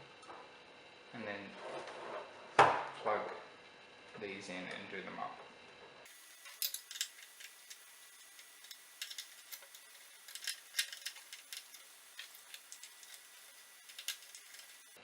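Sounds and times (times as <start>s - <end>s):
clicks and taps of screw terminals: 6.4s - 14.9s.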